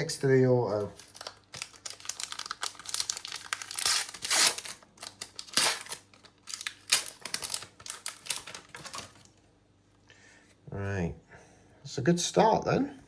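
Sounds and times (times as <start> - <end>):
foil wrapper crinkling: 0.7 - 9.4.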